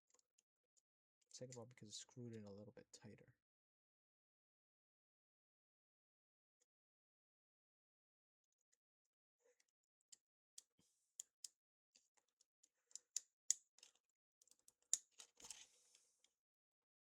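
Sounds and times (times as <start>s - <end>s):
small tools clicking and tapping: 11.2s - 16.3s.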